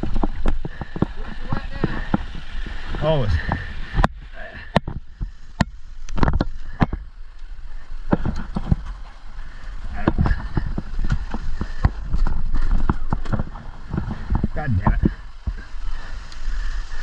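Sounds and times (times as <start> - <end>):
knocks and clatters on rocks: 0.0 - 7.1, 8.0 - 9.2, 9.9 - 15.7
motorcycle engine rumbling: 7.7 - 17.0.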